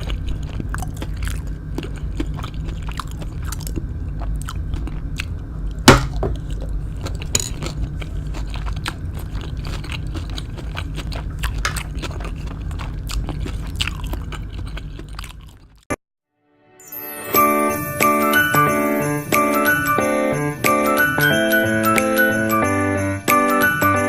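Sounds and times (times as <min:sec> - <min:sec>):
biting and chewing crunchy food: 0:00.0 - 0:16.0.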